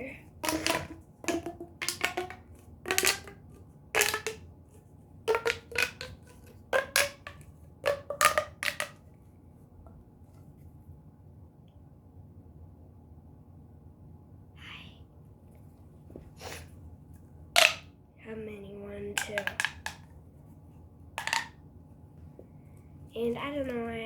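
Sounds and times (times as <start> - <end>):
plastic toy pieces clicking: 0.4 - 4.4, 5.3 - 9.0, 19.2 - 20.0, 21.2 - 21.5.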